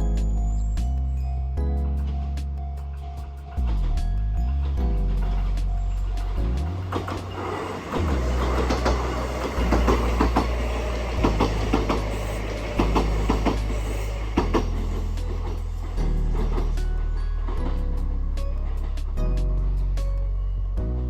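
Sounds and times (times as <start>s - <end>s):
train low rumble: 0.0s - 21.0s
train wheels clacking on rail joints: 3.0s - 17.8s.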